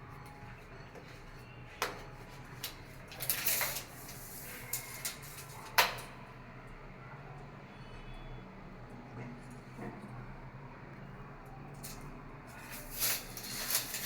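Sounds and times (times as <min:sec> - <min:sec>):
scraping rustle: 0:12.5 - 0:14.0.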